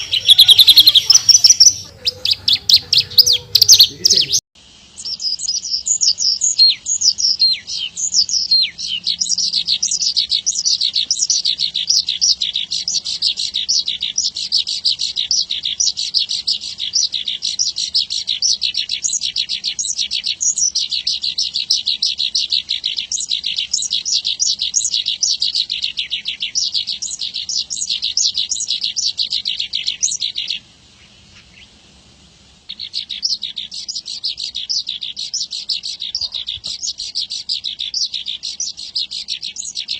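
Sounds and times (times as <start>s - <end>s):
bird singing high chirping notes: 0.0s - 30.6s, 32.7s - 39.9s.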